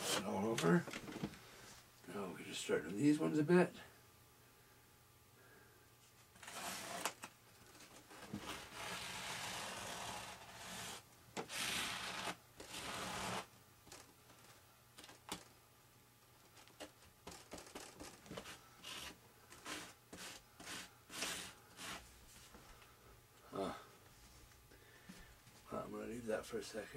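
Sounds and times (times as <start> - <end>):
plastic scraper rasping: 6.4 - 7.3, 8.3 - 13.5, 17.3 - 22.0.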